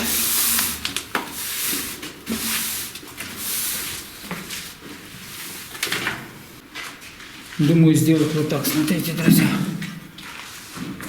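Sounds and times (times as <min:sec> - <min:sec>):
scraping strokes: 0:00.0 - 0:05.9.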